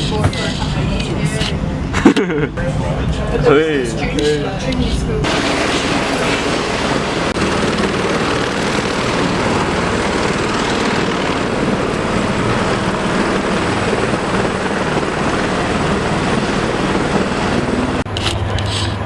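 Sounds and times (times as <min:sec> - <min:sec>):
crowd of overlapping voices: 0:00.0 - 0:11.6.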